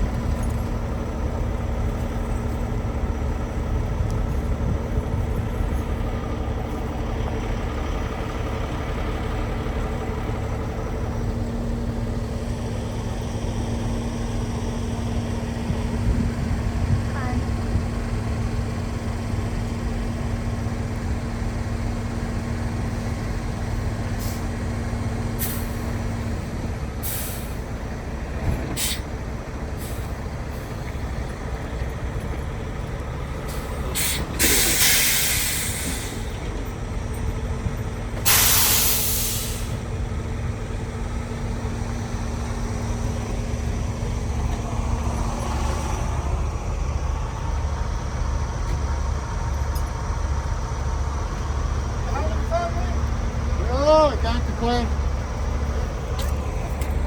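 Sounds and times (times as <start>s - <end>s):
truck engine rumbling: 0.0s - 57.0s
air brake hisses: 27.0s - 27.6s, 28.8s - 29.1s, 33.5s - 36.3s, 38.2s - 39.8s.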